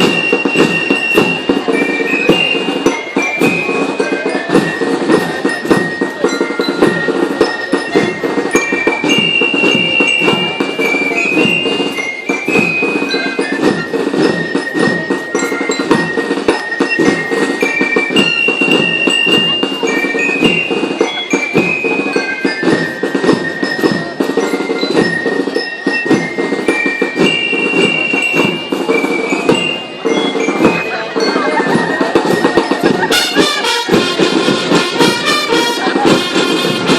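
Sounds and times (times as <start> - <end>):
busy drumming: 0.0 - 36.9
glockenspiel melody: 0.0 - 36.9.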